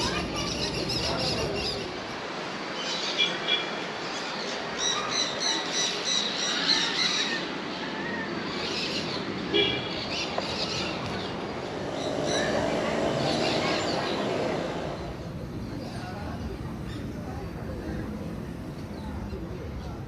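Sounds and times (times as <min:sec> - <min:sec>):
birds chirping: 0:02.7 - 0:17.8.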